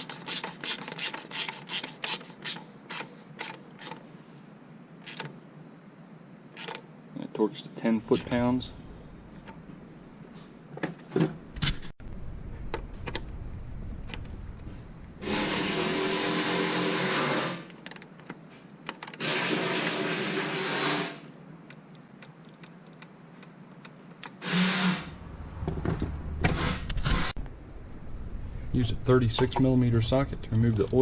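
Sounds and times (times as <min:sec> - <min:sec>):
small electric motor running: 0:24.4 - 0:25.1.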